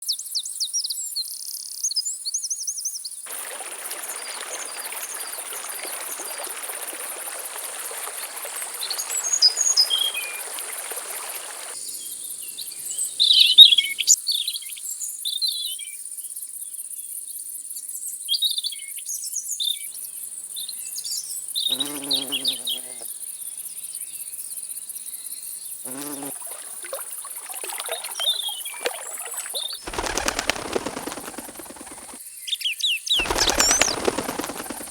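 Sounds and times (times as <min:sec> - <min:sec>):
insects droning: 0:03.3 - 0:14.2, 0:21.6 - 0:32.4, 0:33.1 - 0:34.9
soft hiss: 0:29.9 - 0:32.2, 0:33.2 - 0:34.9
bird chirps and calls: 0:33.2 - 0:34.9.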